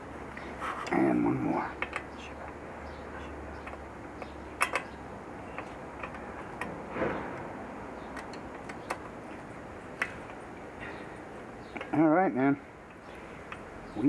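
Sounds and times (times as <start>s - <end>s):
metallic clicks of hand tools: 3.6s - 4.9s, 5.5s - 6.8s.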